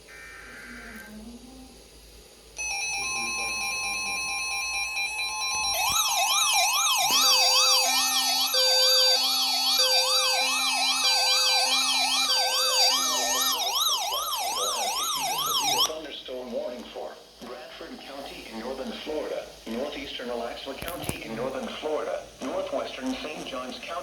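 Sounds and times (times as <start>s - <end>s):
on-off beeping: 2.6s - 15.9s
two-tone attention signal: 2.6s - 15.9s
rising and falling siren alarm: 3.0s - 15.9s.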